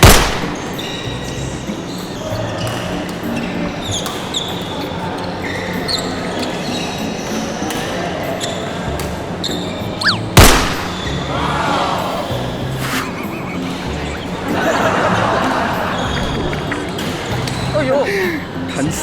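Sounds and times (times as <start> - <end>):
sharp racket hit: 0.0 - 0.9, 10.0 - 11.3, 12.7 - 13.3
shoes squeaking on court floor: 0.0 - 11.3, 12.5 - 17.8.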